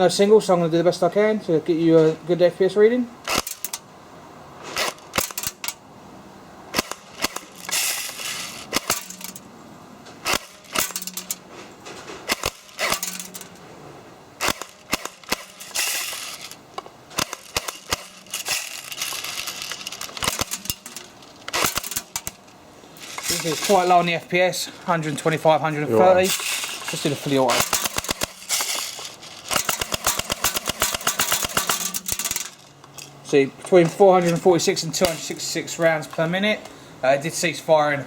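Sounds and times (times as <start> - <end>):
airsoft pistol firing bursts: 27.5 - 28.8, 29.6 - 31.8.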